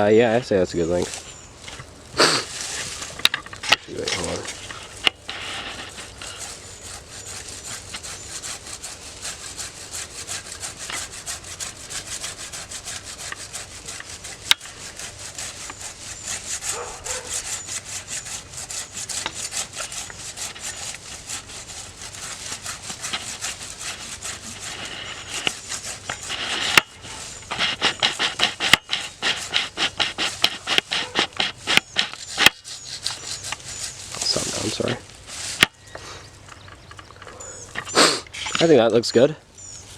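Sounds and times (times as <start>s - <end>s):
hand saw rasping through wood: 2.2s - 35.8s.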